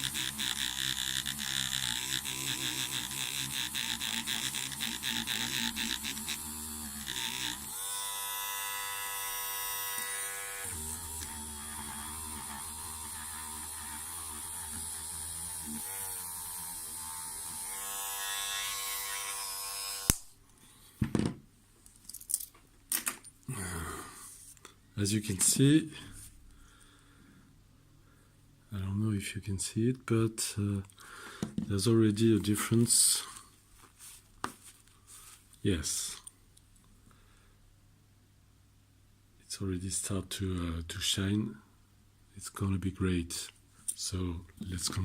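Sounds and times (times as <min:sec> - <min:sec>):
rotary tool motor whine: 0:00.0 - 0:20.1.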